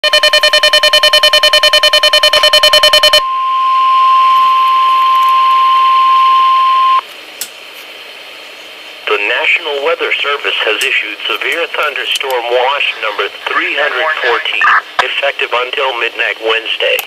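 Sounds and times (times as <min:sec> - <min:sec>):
alert siren beeping rapidly: 0:00.0 - 0:07.0
steady warning tone: 0:00.0 - 0:07.0.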